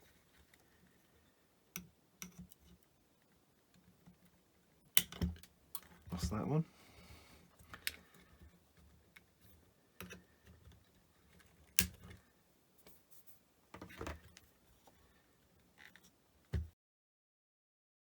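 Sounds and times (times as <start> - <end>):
clicks of small tools and parts: 4.9 - 6.1, 10.0 - 12.2.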